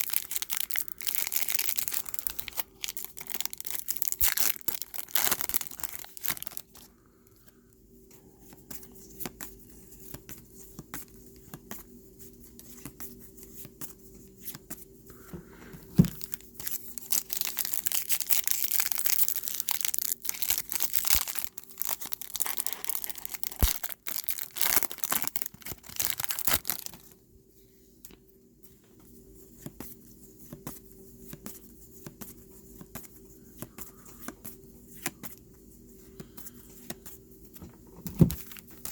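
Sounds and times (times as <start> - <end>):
wrapper being torn and crinkled: 0.0 - 6.8, 16.2 - 27.2
rustling and clicking of cards: 4.9 - 19.6, 20.2 - 24.0, 28.9 - 38.9.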